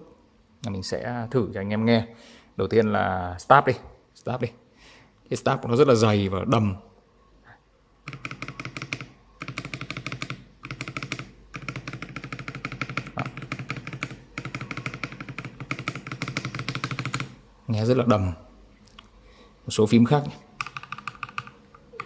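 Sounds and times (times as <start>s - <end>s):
mechanical keyboard typing: 8.0s - 17.4s, 20.6s - 22.0s.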